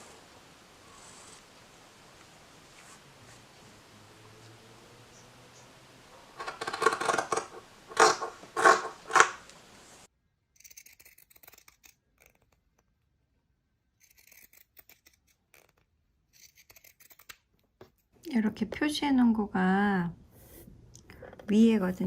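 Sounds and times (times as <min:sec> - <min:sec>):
scissors cutting fabric: 0:10.6 - 0:13.0, 0:14.0 - 0:18.1.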